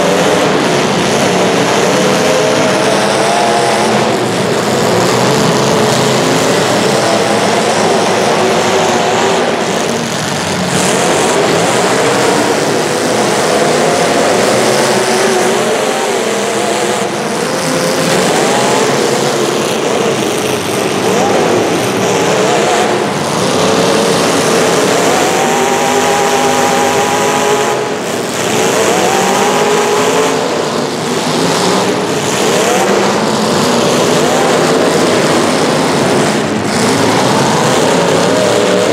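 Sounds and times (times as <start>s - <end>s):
racing engines revving: 0.0s - 38.9s.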